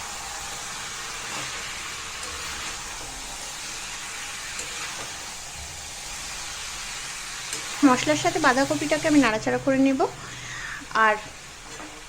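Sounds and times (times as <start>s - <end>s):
vegetables sizzling in oil: 0.0s - 12.0s.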